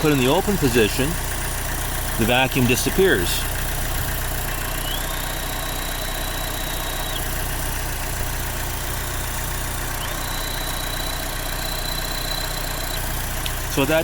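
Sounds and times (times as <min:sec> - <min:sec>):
car engine idling: 0:00.0 - 0:14.0
high whistle: 0:04.5 - 0:07.4, 0:09.9 - 0:13.2.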